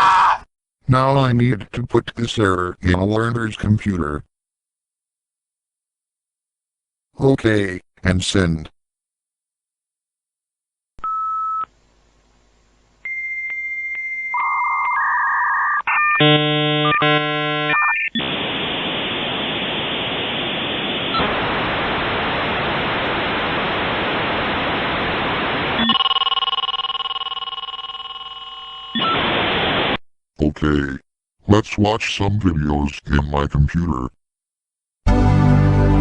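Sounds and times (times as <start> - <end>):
dial-up modem beep: 13.1 - 18.3, 25.8 - 29.3
modem answer tone: 14.4 - 18.1, 25.8 - 29.2
chord of steady tones: 16.2 - 17.8
hissing static: 16.3 - 30.0.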